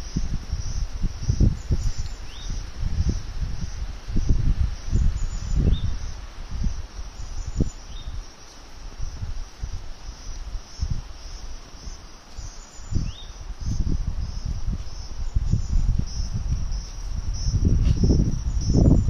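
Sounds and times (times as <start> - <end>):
insects chirping: 0.0 - 19.0.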